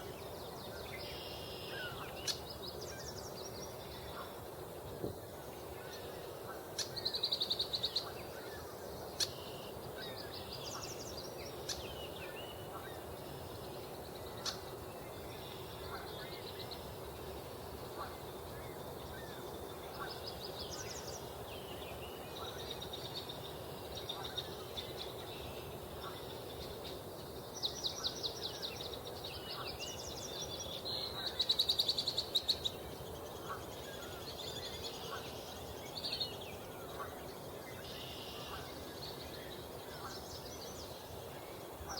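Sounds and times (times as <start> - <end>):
low background noise: 0.0 - 41.9
songbirds trilling: 0.0 - 41.9
geese honking faintly: 3.8 - 7.0, 8.0 - 21.3, 22.0 - 26.6, 32.9 - 35.9, 36.5 - 41.9.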